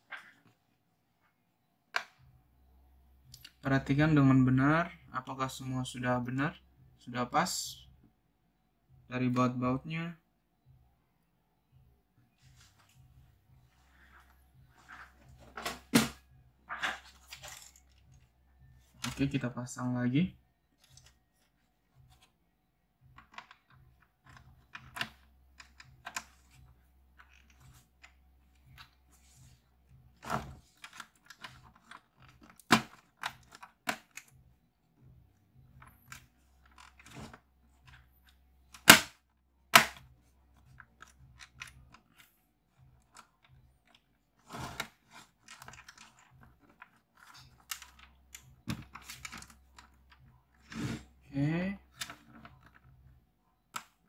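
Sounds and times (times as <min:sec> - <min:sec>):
plastic parts clicking and tapping: 0:23.1 - 0:29.0, 0:30.2 - 0:34.5, 0:35.7 - 0:50.7, 0:53.7 - 0:54.0.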